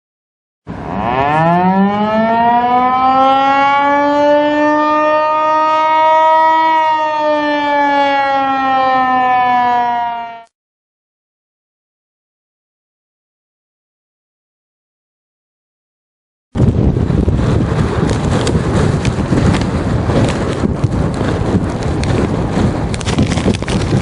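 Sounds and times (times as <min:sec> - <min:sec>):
warning siren wailing: 0:00.7 - 0:10.5.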